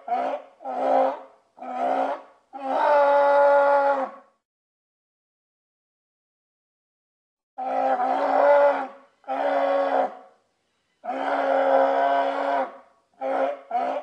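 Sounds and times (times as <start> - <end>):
sea lion barking: 7.6 - 10.3, 11.0 - 14.0.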